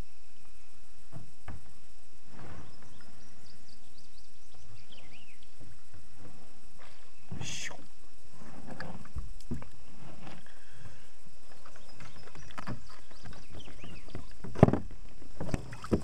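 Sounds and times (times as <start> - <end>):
gear knocking and clicking in kayak: 11.5 - 16.0.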